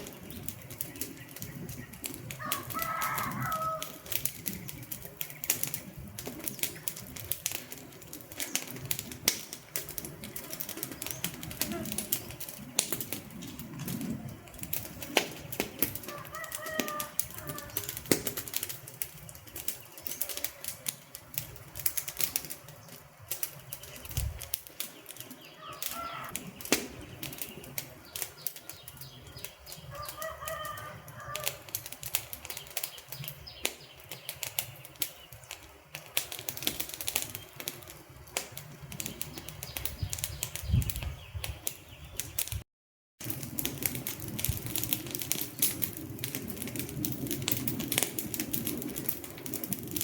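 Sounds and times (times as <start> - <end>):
campfire crackling and popping: 0.0 - 42.6, 43.2 - 50.0
bird calling: 25.1 - 31.5.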